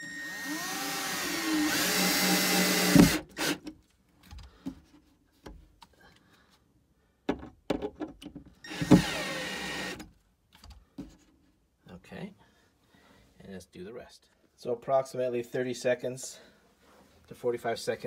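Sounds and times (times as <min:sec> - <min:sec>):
power drill running into wood: 0:00.0 - 0:03.6, 0:08.7 - 0:10.0.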